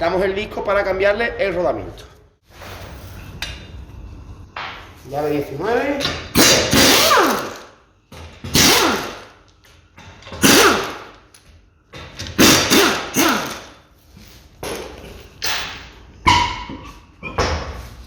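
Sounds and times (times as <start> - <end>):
air wrench bursts: 6.3 - 7.7, 8.5 - 9.4, 10.3 - 11.3, 12.2 - 13.8.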